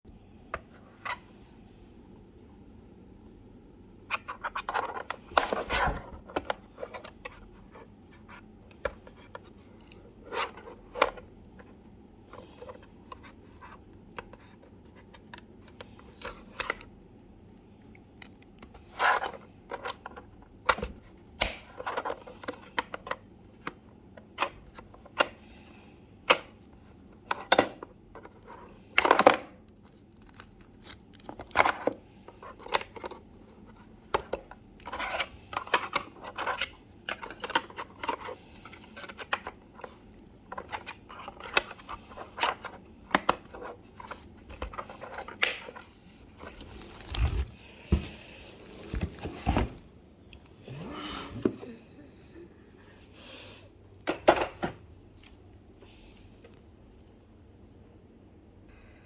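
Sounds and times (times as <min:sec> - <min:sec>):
cardboard packaging rustling: 0:43.4 - 0:50.0.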